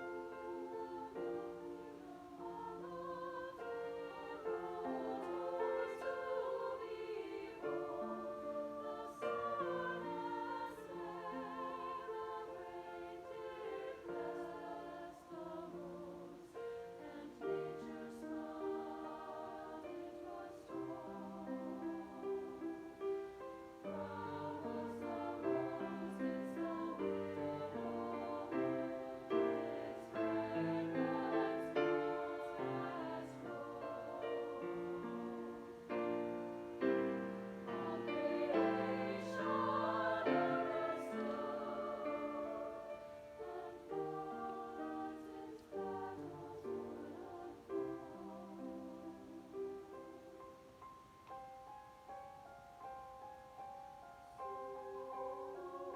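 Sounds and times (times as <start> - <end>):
choir singing in harmony: 0.0 - 55.9.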